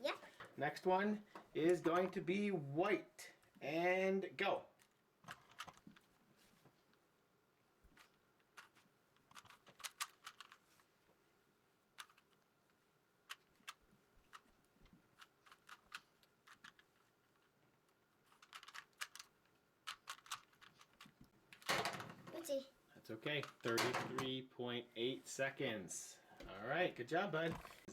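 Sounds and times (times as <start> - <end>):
puzzle cube clicking: 9.3 - 10.6, 18.3 - 21.1.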